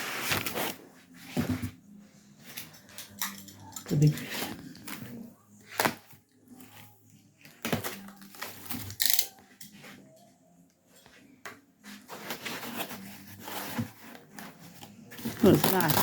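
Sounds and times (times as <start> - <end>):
packaging rustling and crinkling: 12.0 - 16.0.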